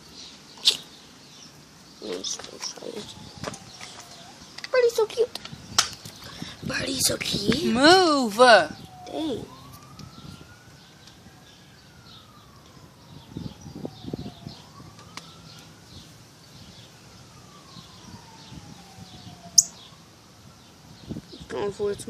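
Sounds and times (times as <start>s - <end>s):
faint siren wailing: 2.0s - 22.0s
sharp high-pitched chirp: 19.6s - 19.8s.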